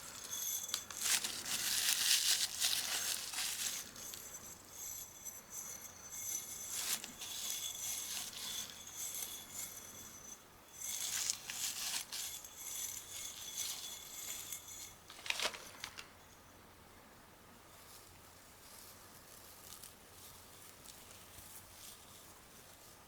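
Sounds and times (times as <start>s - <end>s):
crinkly material rustling: 0.0s - 4.9s, 10.8s - 16.2s.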